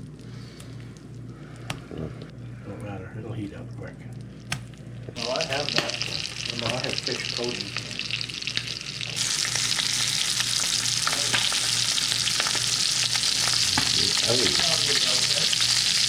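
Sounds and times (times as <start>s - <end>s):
fish sizzling in hot oil: 5.2s - 16.0s.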